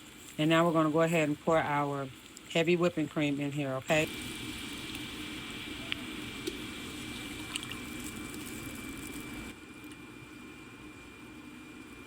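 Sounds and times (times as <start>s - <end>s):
cream poured into hot pan hissing: 4.0s - 9.6s.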